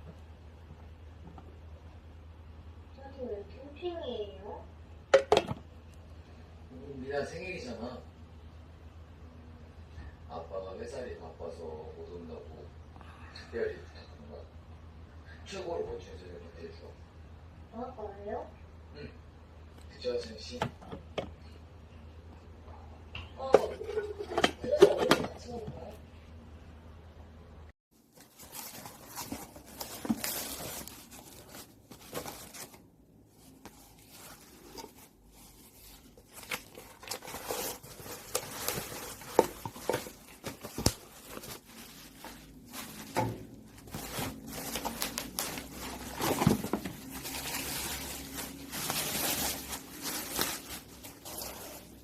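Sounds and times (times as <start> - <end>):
material rustling and tearing: 28.0 - 52.0.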